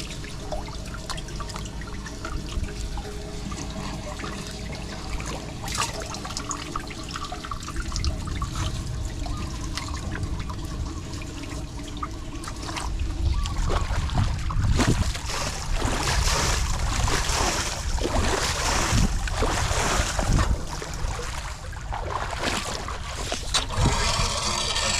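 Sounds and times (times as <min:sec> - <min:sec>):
water running into storm drain: 0:00.0 - 0:24.9.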